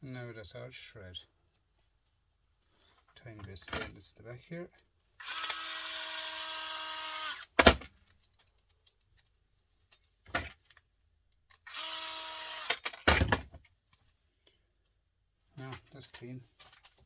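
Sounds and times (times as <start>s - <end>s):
power drill whining: 5.2s - 7.5s, 11.7s - 12.8s.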